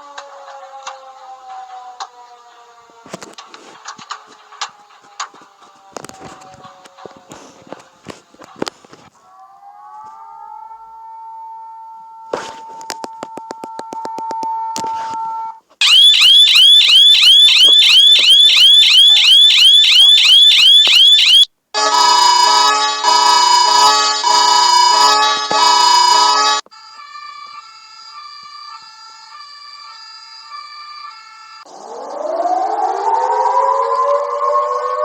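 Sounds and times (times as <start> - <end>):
train of clicks: 0.0 - 2.2, 3.1 - 9.0
rapid falling alarm chirps: 15.8 - 35.0.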